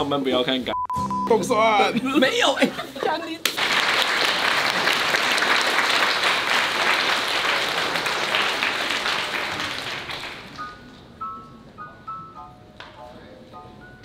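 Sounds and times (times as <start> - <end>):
audience applauding: 3.4 - 10.7.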